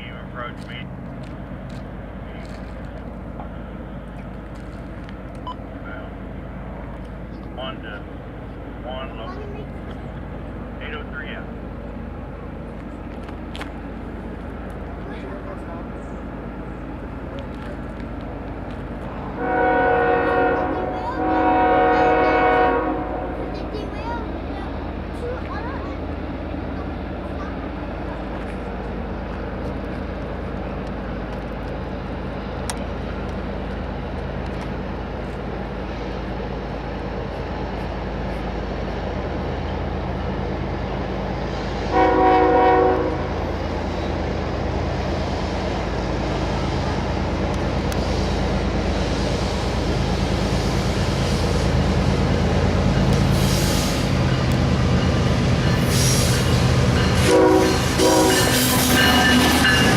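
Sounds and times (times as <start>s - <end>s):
diesel locomotive engine drone: 0.0s - 59.9s
train air horn: 19.4s - 23.4s, 41.9s - 43.3s, 57.2s - 59.9s.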